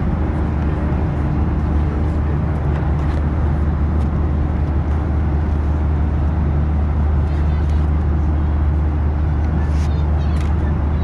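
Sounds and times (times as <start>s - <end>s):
airplane cabin airflow and engine: 0.0s - 11.0s.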